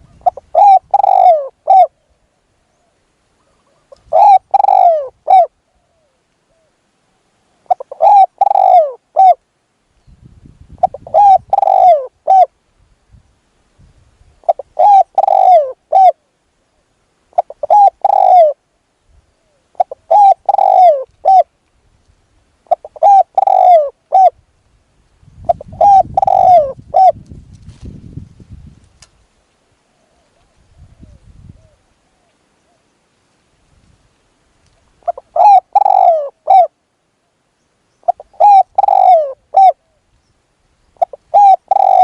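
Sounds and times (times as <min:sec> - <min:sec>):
dove cooing: 0:00.0 - 0:06.8, 0:07.6 - 0:09.4, 0:10.8 - 0:12.6, 0:14.4 - 0:16.3, 0:17.3 - 0:18.7, 0:19.3 - 0:21.5, 0:22.6 - 0:24.4, 0:25.4 - 0:27.2, 0:35.0 - 0:36.8, 0:38.0 - 0:40.1, 0:41.0 - 0:42.0.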